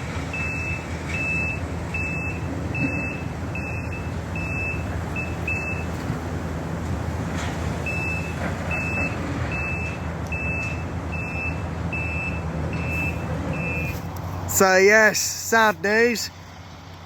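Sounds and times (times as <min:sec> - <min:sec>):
reversing alarm beeping: 0:00.3 - 0:06.0, 0:07.8 - 0:14.0.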